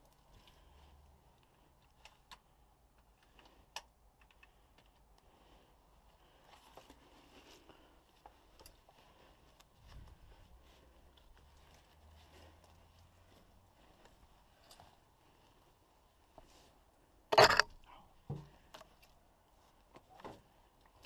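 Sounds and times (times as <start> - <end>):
faint clicks and ticks: 1.3 - 5.3.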